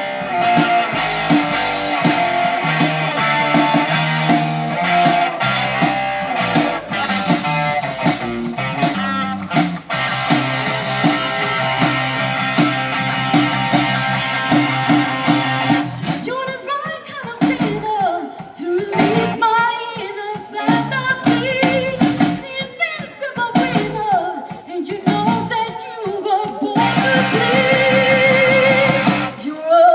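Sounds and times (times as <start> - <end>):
person singing: 0.0 - 7.9, 10.1 - 14.0, 15.9 - 29.9
band with guitar and bass: 0.0 - 16.4, 17.4 - 18.0, 18.9 - 19.6, 20.6 - 22.6, 23.6 - 24.2, 25.0 - 25.6, 26.8 - 29.5.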